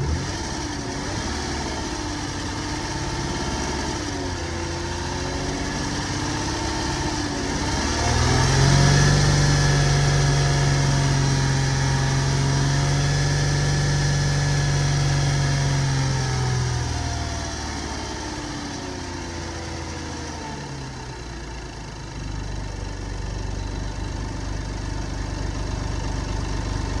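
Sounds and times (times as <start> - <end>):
car engine revving: 0.0 - 4.0, 6.3 - 15.9.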